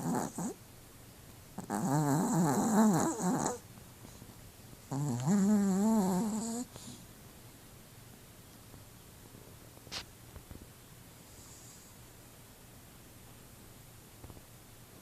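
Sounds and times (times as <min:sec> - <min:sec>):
dog snoring: 0:00.0 - 0:00.6, 0:01.6 - 0:03.6, 0:04.9 - 0:07.0, 0:11.3 - 0:12.0.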